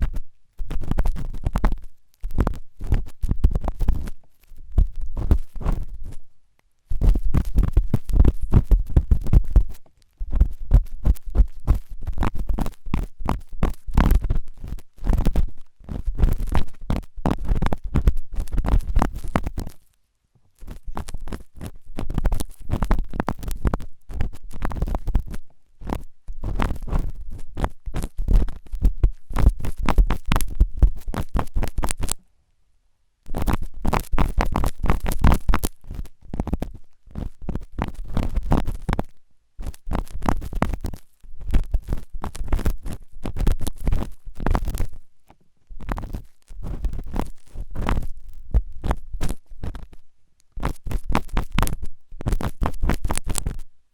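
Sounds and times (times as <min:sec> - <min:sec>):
tool scraping an ear: 0:20.6 - 0:32.2.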